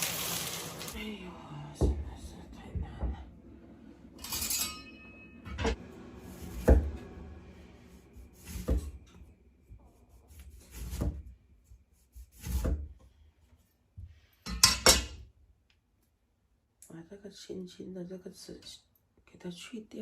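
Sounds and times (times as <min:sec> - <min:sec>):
knocks and rubs in kitchen: 0:01.6 - 0:03.5, 0:05.5 - 0:07.3, 0:08.0 - 0:15.2
kitchen utensil scraping: 0:04.2 - 0:07.0.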